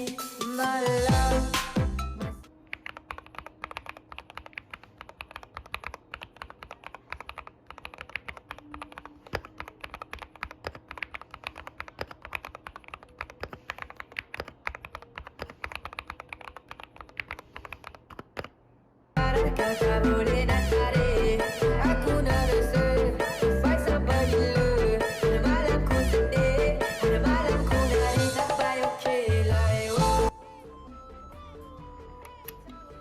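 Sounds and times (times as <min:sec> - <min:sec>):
music: 0:00.0 - 0:04.4, 0:06.9 - 0:15.2, 0:19.2 - 0:33.0
mechanical keyboard typing: 0:02.7 - 0:18.6.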